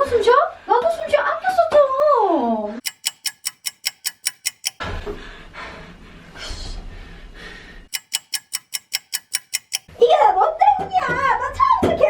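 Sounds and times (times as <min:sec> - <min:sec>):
rapid ticking: 0:02.8 - 0:04.8, 0:07.9 - 0:09.9.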